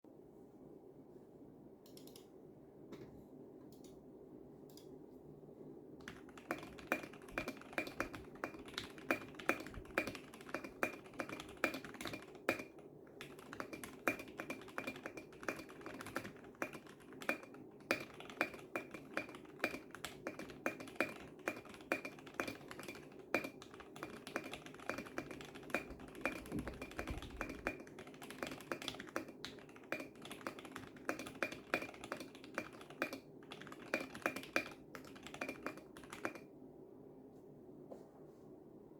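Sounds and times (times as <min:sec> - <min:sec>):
fast mechanical keyboard typing: 0:06.0 - 0:36.5.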